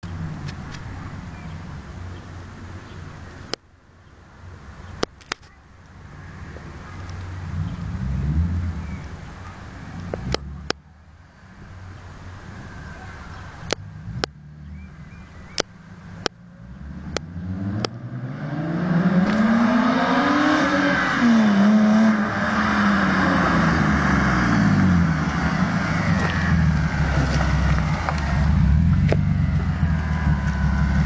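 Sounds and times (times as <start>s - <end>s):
car engine revving: 16.5s - 31.0s.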